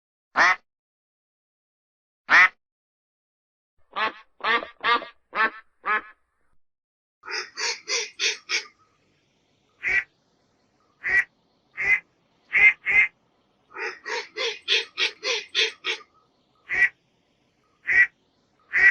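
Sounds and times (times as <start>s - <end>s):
duck quacking: 0.4s - 0.6s, 2.3s - 2.6s, 3.9s - 6.2s, 7.2s - 8.8s, 9.8s - 10.1s, 11.0s - 17.0s, 17.8s - 18.9s.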